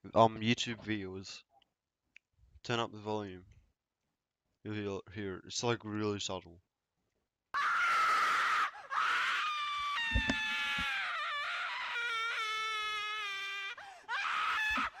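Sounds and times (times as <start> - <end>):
loud shrill scream: 7.6 - 15.0.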